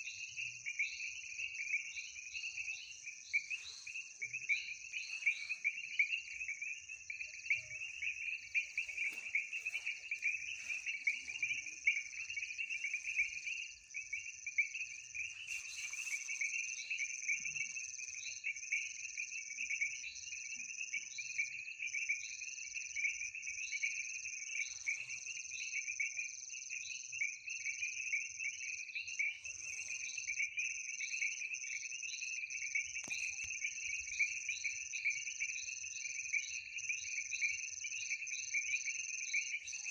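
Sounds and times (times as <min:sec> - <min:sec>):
frogs and insects trilling: 0:00.0 - 0:39.9.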